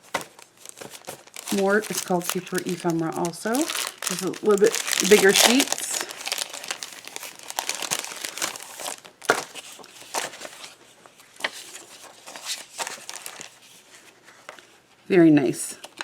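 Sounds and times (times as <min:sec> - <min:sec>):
paper sheets rustling: 0:00.0 - 0:14.6.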